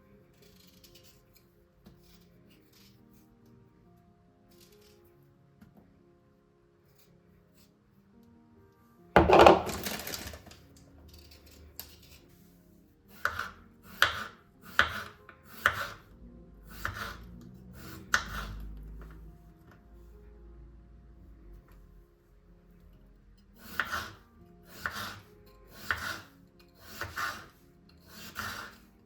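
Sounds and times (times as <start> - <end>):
soft background music: 0.0 - 29.0
knife chopping on cutting board: 9.2 - 9.9, 13.1 - 16.0, 16.7 - 17.2, 23.7 - 25.2, 25.8 - 26.3, 26.9 - 27.5, 28.1 - 28.8.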